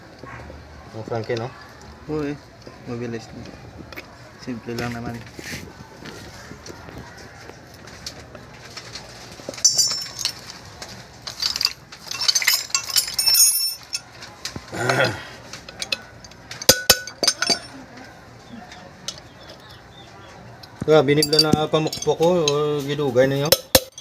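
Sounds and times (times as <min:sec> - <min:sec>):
metal tools clinking and tapping: 0:08.7 - 0:19.8, 0:20.6 - 0:24.0.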